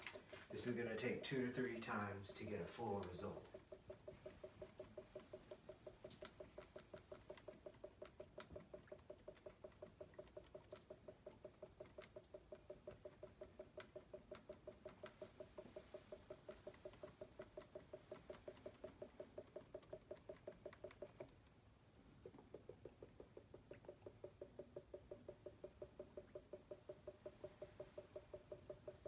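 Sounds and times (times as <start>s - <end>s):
water glugging through bottles: 0.0s - 14.4s.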